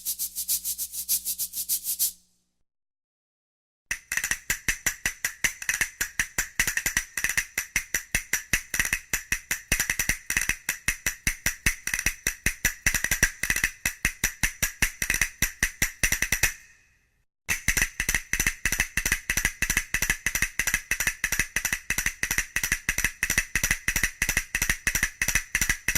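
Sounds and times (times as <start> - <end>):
tambourine jingling: 0.0 - 2.2.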